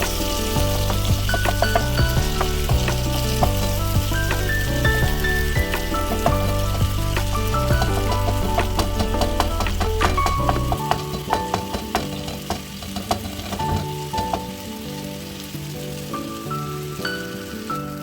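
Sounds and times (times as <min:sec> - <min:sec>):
meat sizzling in a pan: 0:00.0 - 0:18.0
spatula clicking and scraping pan: 0:07.3 - 0:14.5.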